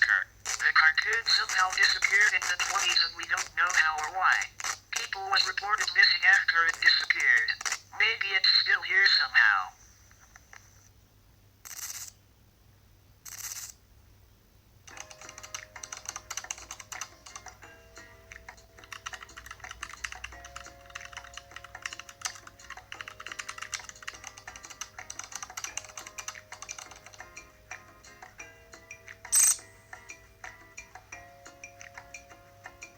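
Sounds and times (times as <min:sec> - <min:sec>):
short bursts of noise: 0:11.6 - 0:12.2, 0:13.2 - 0:13.8
keyboard typing clicks: 0:14.9 - 0:17.6, 0:18.4 - 0:27.3.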